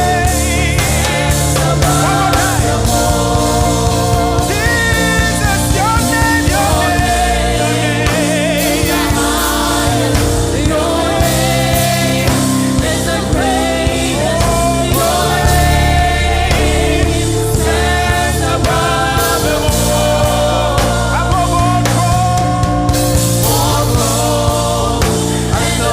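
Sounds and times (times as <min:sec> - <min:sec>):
band with bass and drums: 0:00.0 - 0:25.9
choir singing: 0:00.0 - 0:25.9.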